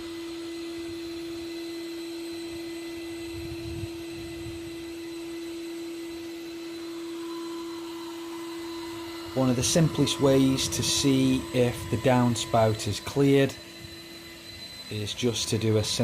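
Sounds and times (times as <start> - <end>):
vacuum motor whine: 0.0 - 16.0.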